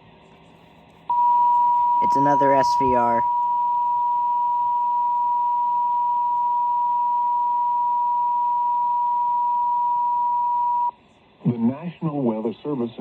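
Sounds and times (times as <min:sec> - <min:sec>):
steady alarm tone: 0:01.1 - 0:10.9.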